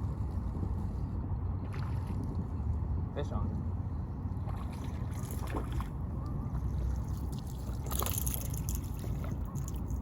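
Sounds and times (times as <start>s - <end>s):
wind rumble on microphone: 0.0s - 10.0s
water splashing: 4.4s - 10.0s.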